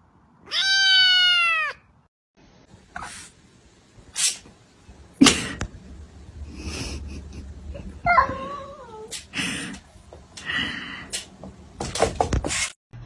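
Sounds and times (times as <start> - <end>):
cat meowing: 0.5 - 1.9.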